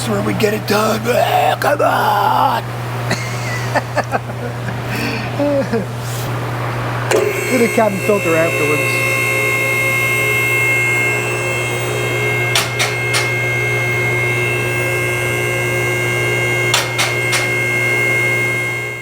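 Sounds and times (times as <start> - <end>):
mechanical hum with whining: 0.0 - 19.0
sharp clicks or knocks: 12.6 - 13.5, 16.7 - 17.8.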